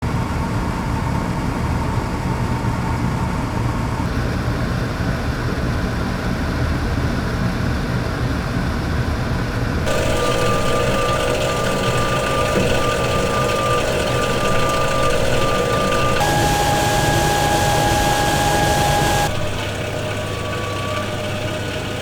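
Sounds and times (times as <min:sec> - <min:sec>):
faint hum: 0:09.9 - 0:22.0
industrial machinery rumbling: 0:09.9 - 0:22.0
machine high whine: 0:09.9 - 0:22.0.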